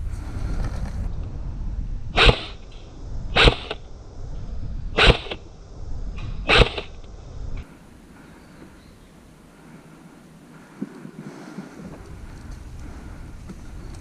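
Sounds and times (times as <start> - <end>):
wind noise on microphone: 0.0 - 9.2, 10.5 - 14.0
airsoft gun shots: 2.2 - 2.6, 3.3 - 3.8, 5.0 - 5.4, 6.5 - 7.0.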